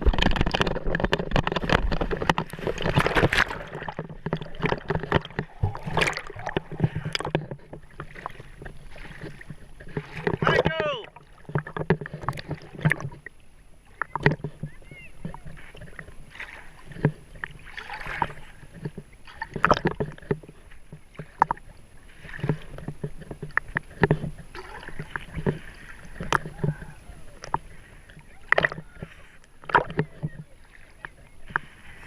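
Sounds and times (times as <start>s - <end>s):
sharp knocks and clatters: 0.0s - 10.8s
water splashing and sloshing: 0.0s - 32.0s.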